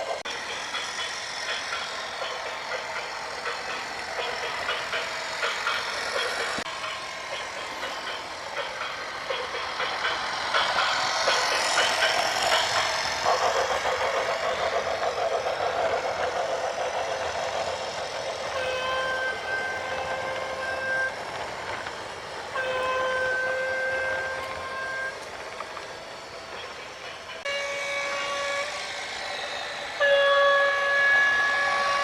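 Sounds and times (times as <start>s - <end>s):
horn blasts: 22.6s - 25.2s, 27.5s - 28.9s, 30.0s - 32.0s.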